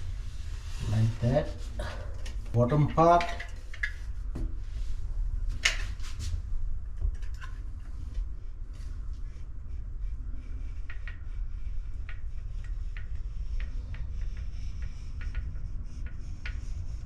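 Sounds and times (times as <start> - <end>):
small clicks and rubbing: 2.2 - 4.2.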